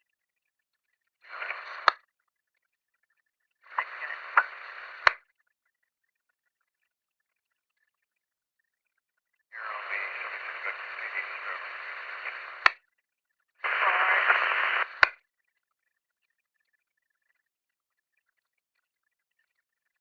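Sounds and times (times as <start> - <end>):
police radio static: 1.3 - 1.9, 3.7 - 5.2, 9.6 - 12.8, 13.6 - 15.1.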